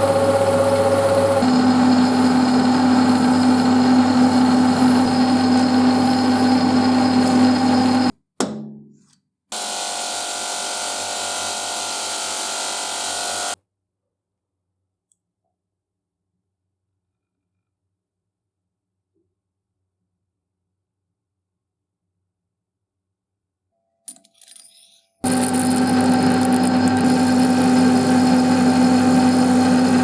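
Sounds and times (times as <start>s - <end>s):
power tool humming: 0.0s - 8.1s, 9.6s - 13.6s, 25.2s - 30.0s.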